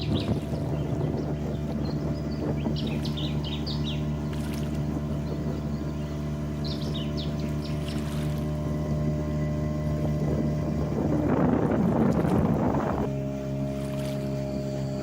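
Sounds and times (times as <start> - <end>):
bird chirping: 0.0 - 4.3, 5.1 - 8.0
boat motor running: 0.0 - 15.0.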